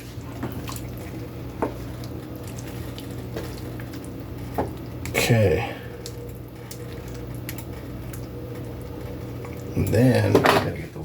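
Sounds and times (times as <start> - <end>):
sauce sizzling in a pot: 0.0 - 10.3
steady low hum: 0.0 - 11.0.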